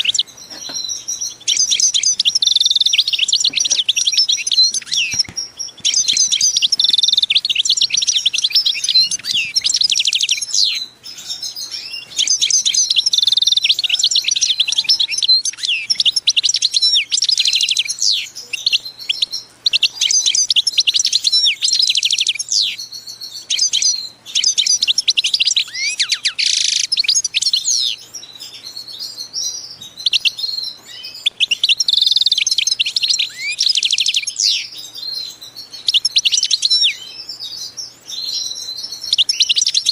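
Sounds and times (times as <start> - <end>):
songbird chirping and trilling: 0.0 - 39.9.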